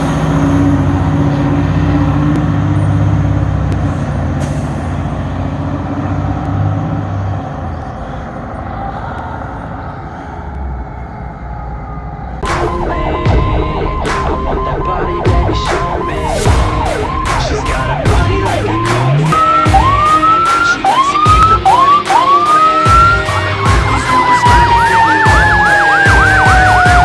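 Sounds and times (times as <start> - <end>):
diesel engine rumbling: 0.0 - 27.0
siren: 10.0 - 27.0.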